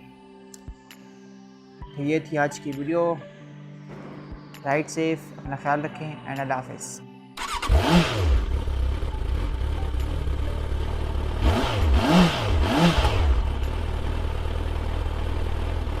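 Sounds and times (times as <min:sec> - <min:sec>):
motorcycle throttle blips: 0:07.4 - 0:15.0
motorcycle engine idling: 0:07.4 - 0:16.0.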